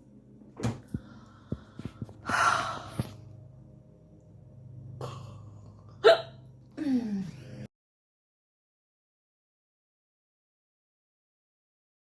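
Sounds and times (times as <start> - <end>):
woman hiccuping: 6.0 - 7.2.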